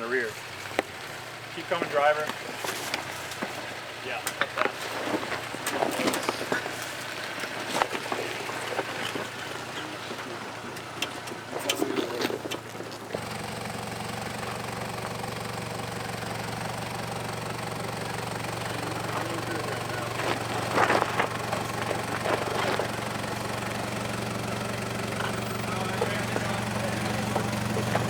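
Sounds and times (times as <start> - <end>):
truck engine running at low revs: 0.0 - 28.0
rock crunching and cracking: 1.8 - 13.4, 18.1 - 28.0.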